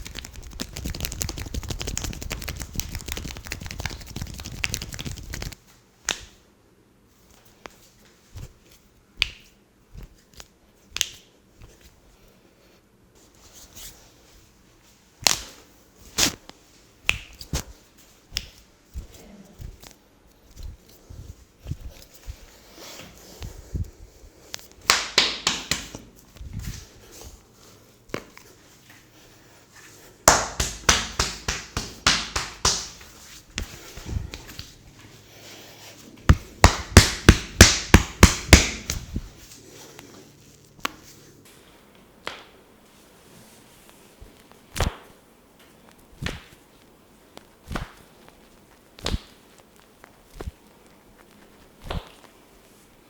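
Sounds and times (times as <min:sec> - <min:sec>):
hands cracking on skin: 0:00.0 - 0:06.4, 0:15.2 - 0:15.5
hands slapping body rhythmically: 0:00.0 - 0:06.4, 0:09.2 - 0:11.7, 0:15.2 - 0:15.6, 0:17.0 - 0:20.0, 0:24.5 - 0:26.5, 0:30.2 - 0:34.7, 0:36.3 - 0:39.2, 0:42.2 - 0:42.6, 0:46.2 - 0:46.6, 0:49.0 - 0:49.4.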